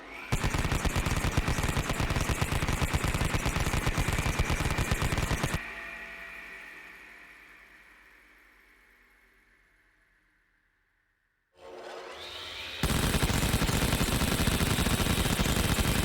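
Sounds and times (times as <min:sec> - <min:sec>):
rotary cannon firing rapid burst: 0:00.3 - 0:05.6, 0:12.8 - 0:16.0
high whine of spinning barrels: 0:12.8 - 0:16.0.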